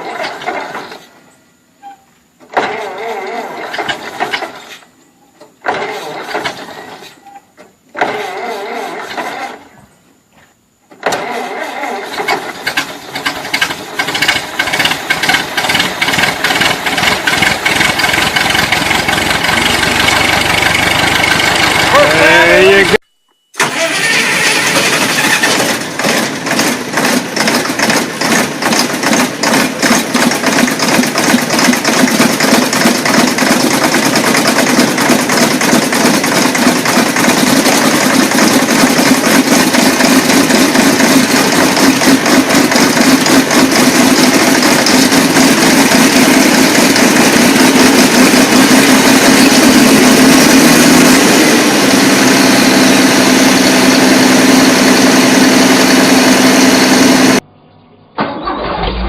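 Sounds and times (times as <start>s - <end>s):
large engine running: 12.1s - 23.0s, 23.6s - 57.4s.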